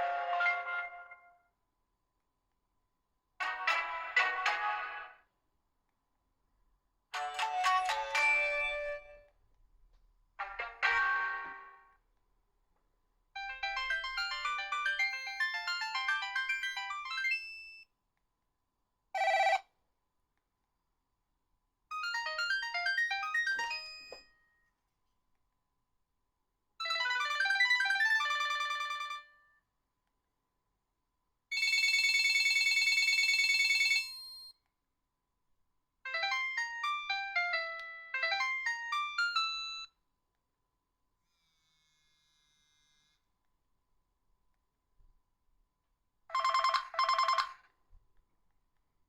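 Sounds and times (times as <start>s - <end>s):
electronic ringtone melodies: 7.2s - 9.3s, 13.4s - 17.8s, 21.9s - 24.2s, 26.8s - 29.4s, 36.1s - 39.9s, 46.3s - 47.6s
phone ringing tone: 19.2s - 19.7s, 26.8s - 29.4s, 31.5s - 34.5s, 46.3s - 47.6s.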